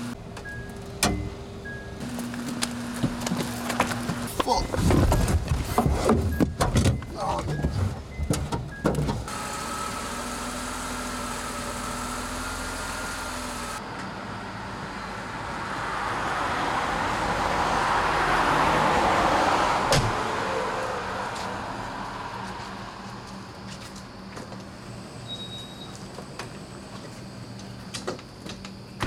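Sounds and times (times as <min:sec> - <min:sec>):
rush of vehicle noise: 0:11.8 - 0:25.2.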